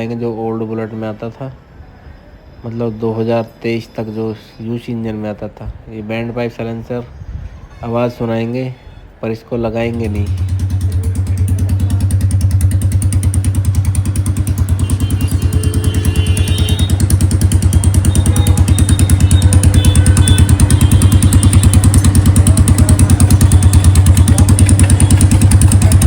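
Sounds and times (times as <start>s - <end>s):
motorcycle engine idling: 9.9s - 26.0s.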